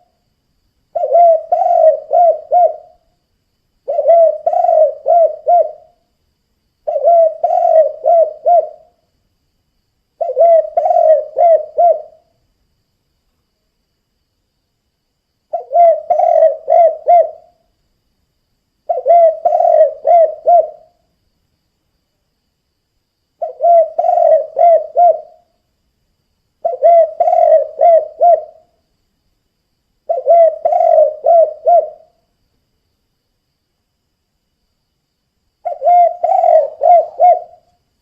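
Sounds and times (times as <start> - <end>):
dove cooing: 0.9 - 3.1, 3.9 - 6.0, 6.8 - 9.0, 10.2 - 12.3, 15.5 - 17.6, 18.9 - 20.9, 23.4 - 25.5, 26.6 - 28.7, 30.1 - 32.2, 35.6 - 37.6.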